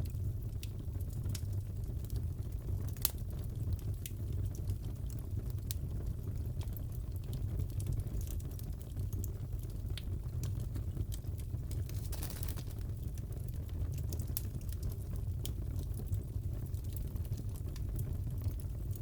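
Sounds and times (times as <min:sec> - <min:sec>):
wood fire crackling: 0:00.0 - 0:19.0
pops and snaps of fire: 0:02.9 - 0:03.2, 0:10.0 - 0:15.6.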